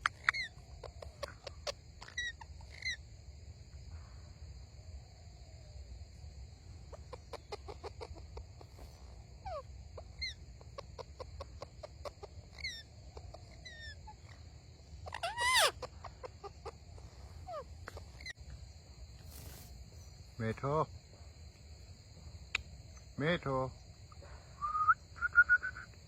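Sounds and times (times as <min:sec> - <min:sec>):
parrot chirping: 0:00.0 - 0:03.0, 0:06.9 - 0:08.8, 0:09.4 - 0:18.4
parrot squawk: 0:11.0 - 0:14.4, 0:15.0 - 0:16.8, 0:17.4 - 0:18.3.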